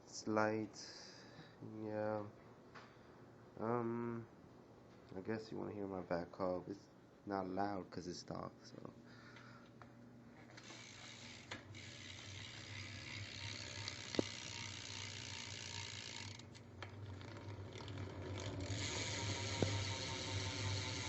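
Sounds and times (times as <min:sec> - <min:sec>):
bike hub ratcheting buzz: 0:10.6 - 0:21.0.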